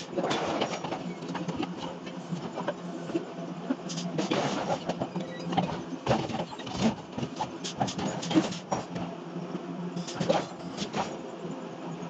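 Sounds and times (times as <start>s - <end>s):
steady machine hum: 0.0s - 12.0s.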